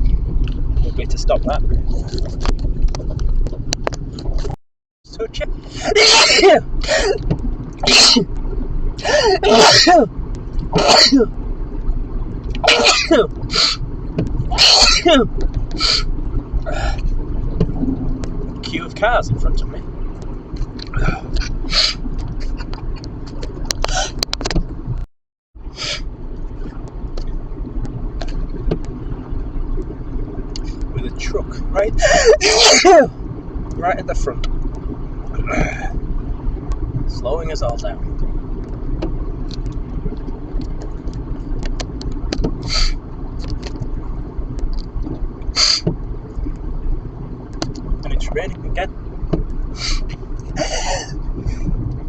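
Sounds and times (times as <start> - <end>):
car road and engine rumble: 0.0 - 52.0
raindrops ticking on car: 36.2 - 52.0.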